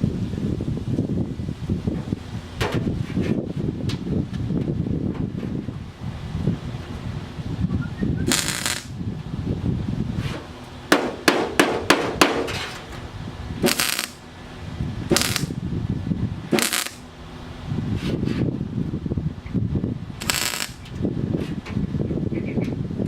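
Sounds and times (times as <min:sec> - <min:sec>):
low steady rumble: 0:00.0 - 0:23.0
short welding pops: 0:08.2 - 0:08.9, 0:13.6 - 0:14.2, 0:15.1 - 0:15.6, 0:16.5 - 0:17.0, 0:20.2 - 0:21.0
welding bursts: 0:08.2 - 0:09.0, 0:13.6 - 0:14.2, 0:15.0 - 0:15.6, 0:16.5 - 0:17.1, 0:20.2 - 0:21.0.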